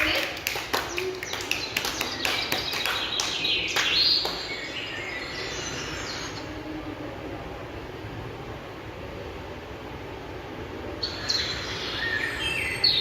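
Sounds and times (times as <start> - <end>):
people clapping: 0.0 - 4.6
recorded birds chirping over speaker: 0.0 - 9.3, 10.5 - 13.0.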